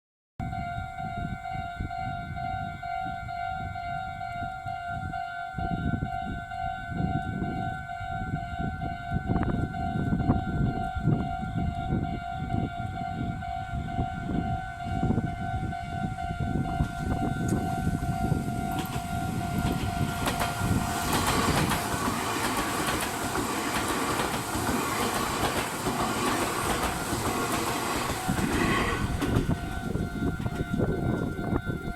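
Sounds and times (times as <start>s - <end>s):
electric train passing: 0.4s - 31.9s
level crossing alarm ringing: 0.4s - 31.9s
wheels clattering over rails: 18.6s - 31.9s.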